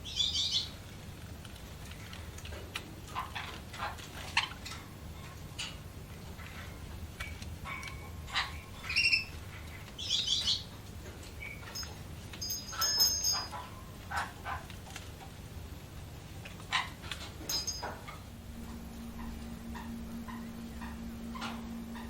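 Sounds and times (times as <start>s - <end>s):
budgerigars chirping and whistling: 0.0s - 0.7s, 7.3s - 9.3s, 10.0s - 10.7s
steady low hum: 0.0s - 22.0s.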